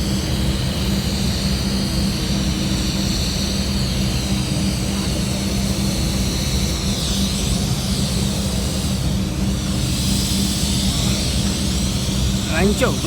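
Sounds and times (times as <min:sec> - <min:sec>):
high machine whine: 0:11.1 - 0:13.0
low machine drone: 0:11.3 - 0:13.0.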